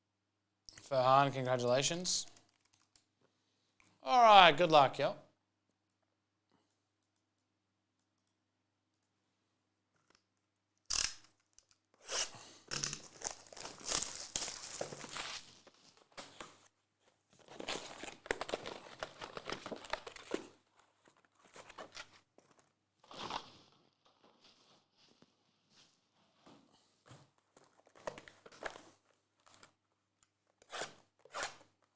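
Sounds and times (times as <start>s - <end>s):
packaging tearing and crinkling: 12.1s - 15.6s.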